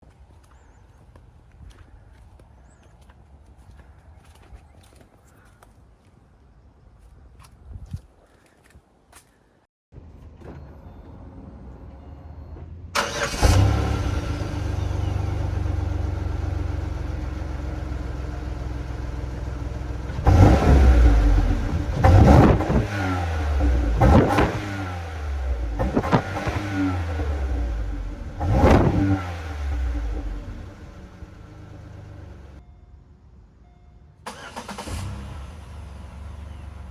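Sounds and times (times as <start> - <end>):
car engine starting: 10.5 - 32.6, 34.2 - 36.9
car engine revving: 13.0 - 17.6, 20.0 - 32.6
car engine idling: 13.0 - 22.4, 25.2 - 32.6.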